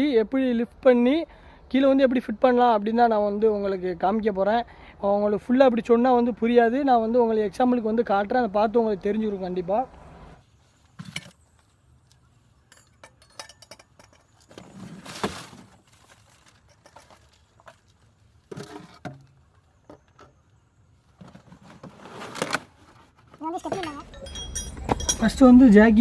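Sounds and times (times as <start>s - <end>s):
light metallic clinks: 12.6s - 14.5s, 23.6s - 25.4s
rustling: 14.0s - 25.1s.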